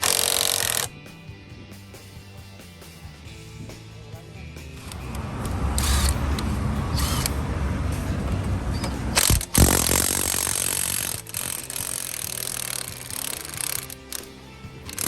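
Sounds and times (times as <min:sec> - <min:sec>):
impact wrench rattling: 0:00.0 - 0:00.9, 0:04.8 - 0:15.0.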